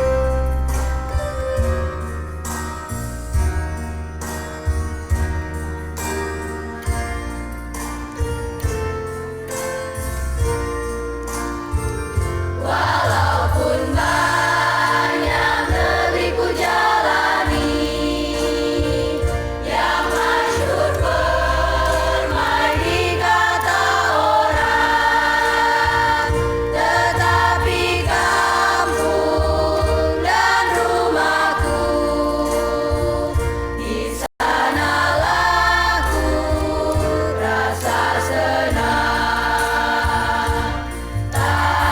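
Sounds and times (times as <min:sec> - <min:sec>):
instrumental accompaniment: 0:00.0 - 0:41.9
choir singing: 0:12.6 - 0:41.9.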